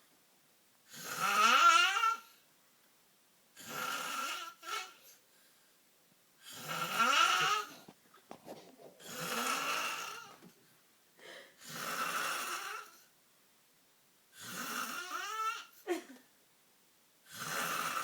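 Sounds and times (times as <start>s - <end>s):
man snoring: 0.9s - 2.2s, 3.6s - 5.0s, 6.5s - 7.8s, 9.0s - 10.3s, 11.6s - 13.0s, 14.4s - 15.7s, 17.3s - 18.0s.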